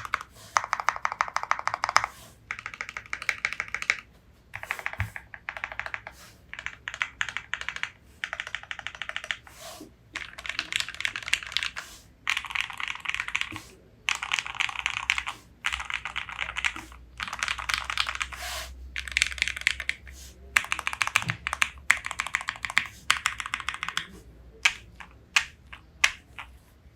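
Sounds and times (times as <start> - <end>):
fast typing on mechanical keyboard: 0.0 - 9.5, 10.2 - 18.4, 19.0 - 26.6.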